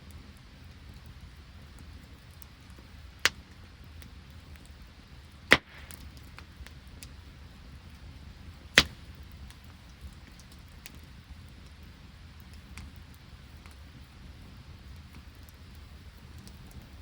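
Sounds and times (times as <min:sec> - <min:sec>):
campfire crackling: 0:00.0 - 0:17.0
sharp loud fire pop: 0:05.5 - 0:06.2, 0:08.8 - 0:09.0.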